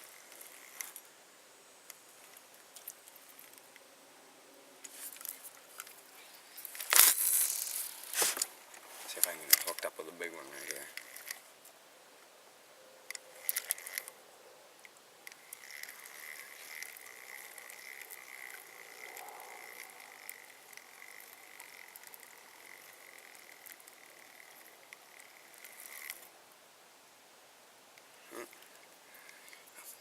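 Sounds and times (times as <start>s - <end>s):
fishing reel clicks: 0.0s - 1.0s, 6.6s - 8.2s, 10.5s - 11.4s, 13.4s - 14.2s, 15.3s - 26.3s
fishing reel gears whirring: 0.0s - 1.0s, 6.6s - 8.4s, 10.5s - 11.4s, 13.3s - 14.1s, 15.3s - 26.3s.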